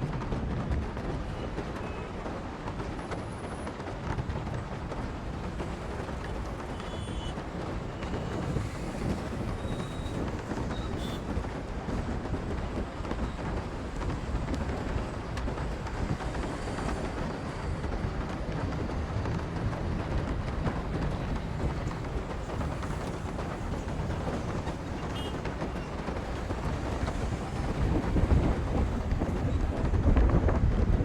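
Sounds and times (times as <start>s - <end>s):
low road rumble: 0.0s - 31.0s
tyres on wet road: 0.3s - 31.0s
rain falling on car: 0.7s - 31.0s.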